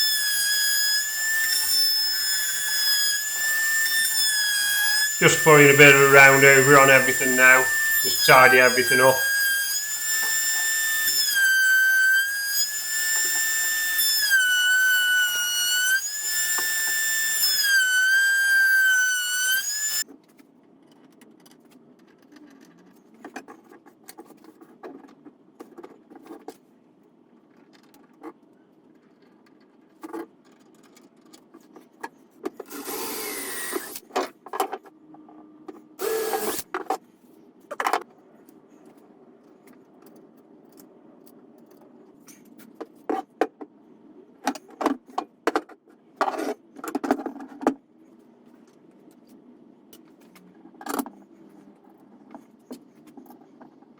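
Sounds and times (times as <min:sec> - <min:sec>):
router whining: 0:04.8 - 0:11.1
short noisy bursts: 0:05.1 - 0:09.4.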